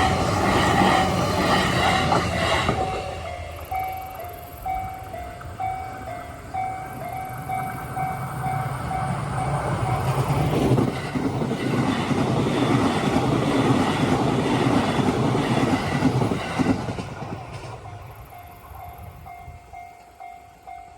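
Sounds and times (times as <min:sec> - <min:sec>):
level crossing warning bell: 0:00.0 - 0:11.5, 0:17.4 - 0:20.9
trains passing on rails: 0:00.0 - 0:20.9.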